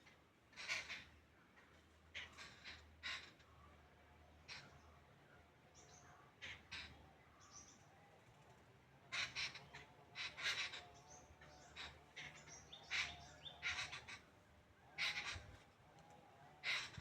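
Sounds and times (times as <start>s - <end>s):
birds giving harsh calls: 0.5s - 1.1s, 9.1s - 14.3s, 15.0s - 15.6s, 16.6s - 17.0s.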